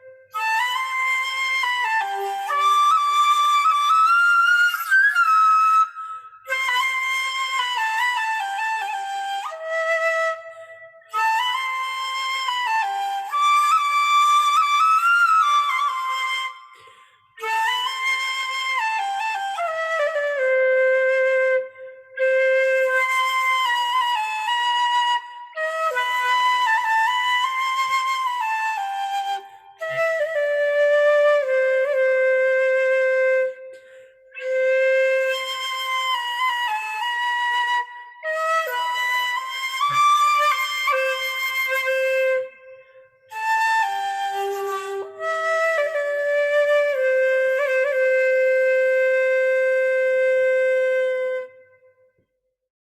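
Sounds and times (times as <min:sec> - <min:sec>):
slow flute-like melody: 0:00.0 - 0:52.4.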